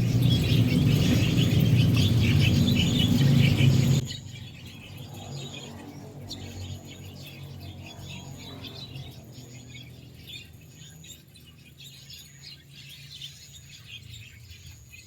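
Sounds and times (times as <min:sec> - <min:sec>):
loud low rumble: 0:00.0 - 0:04.0
birds chattering: 0:00.0 - 0:15.0.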